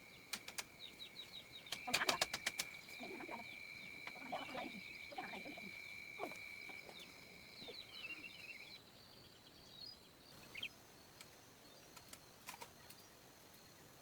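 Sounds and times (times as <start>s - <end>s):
bird-like chirps: 0.1s - 12.2s
faint clicks: 0.3s - 0.7s, 1.6s - 2.8s.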